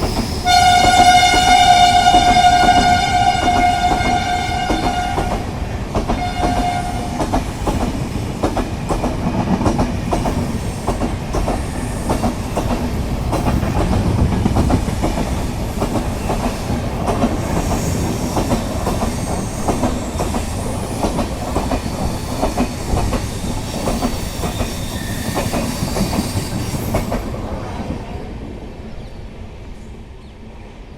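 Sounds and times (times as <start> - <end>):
train wheels clacking over rail joints: 0.0 - 27.3
train horn blast: 0.4 - 5.5, 6.2 - 7.2.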